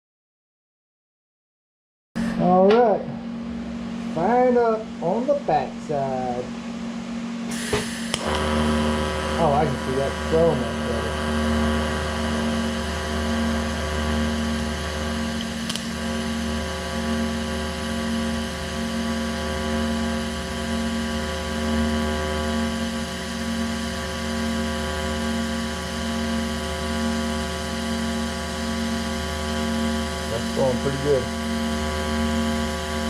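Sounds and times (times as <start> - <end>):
welding arc buzzing hum: 2.2 - 33.0
sharp click: 7.5 - 8.4, 15.4 - 15.9.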